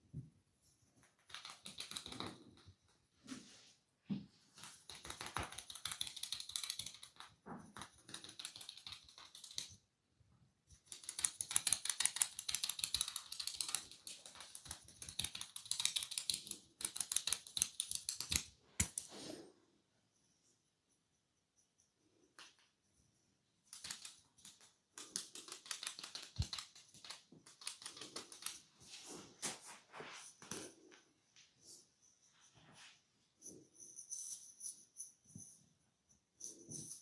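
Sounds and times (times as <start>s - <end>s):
fingers scratching through hair: 4.6s - 9.7s, 23.7s - 30.7s.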